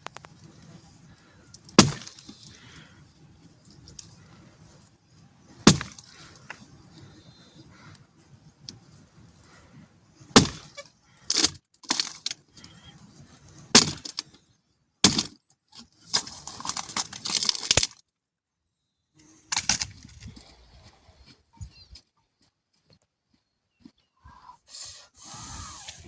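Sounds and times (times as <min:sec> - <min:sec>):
sharp cracks and snaps: 0:10.4 - 0:12.4, 0:13.8 - 0:14.4, 0:15.0 - 0:18.0.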